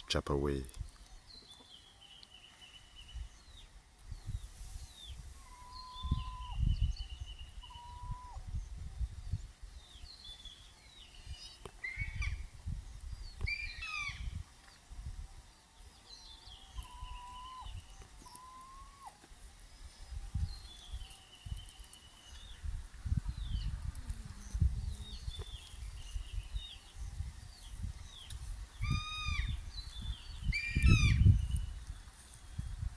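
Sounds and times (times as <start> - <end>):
birds chirping and trilling: 0.0 - 14.9, 15.5 - 19.1, 19.7 - 31.8
microphone rumbling: 22.7 - 31.9.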